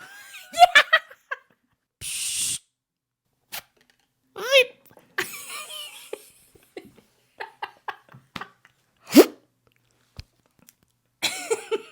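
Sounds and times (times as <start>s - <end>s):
mouth clicks and pops: 2.0s - 2.6s.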